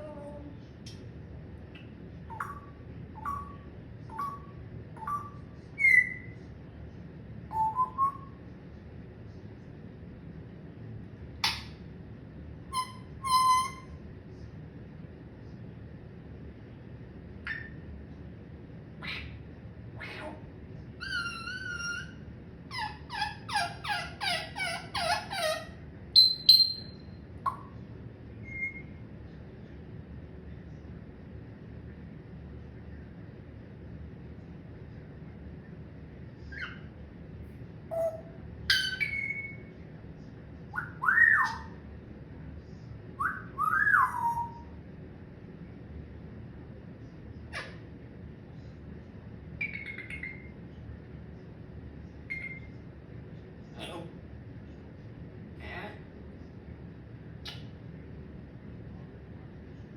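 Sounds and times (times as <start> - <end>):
parrot whistling: 2.3 - 6.4, 7.5 - 8.4, 12.8 - 14.0, 17.5 - 17.8, 21.0 - 27.7, 28.4 - 29.0, 36.5 - 36.9, 37.9 - 39.7, 40.8 - 41.8, 43.2 - 44.7, 49.6 - 50.5, 52.3 - 52.7.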